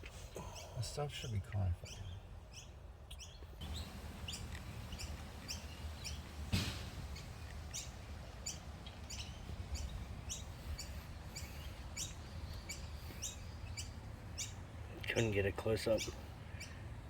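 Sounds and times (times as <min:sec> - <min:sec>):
small bird chirping: 0:01.5 - 0:16.8
steady low rumble: 0:03.5 - 0:17.0
sharp knock: 0:06.5 - 0:07.0.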